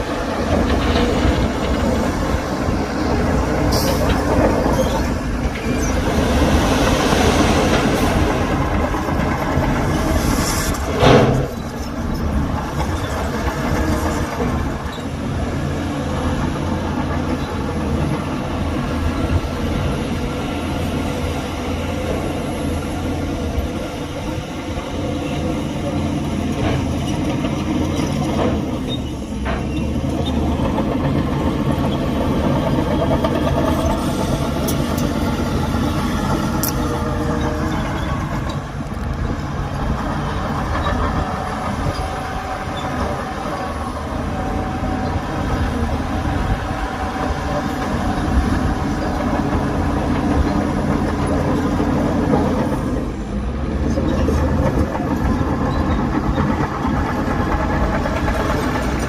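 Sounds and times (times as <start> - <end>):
heavy diesel machinery running: 0.0 - 59.0.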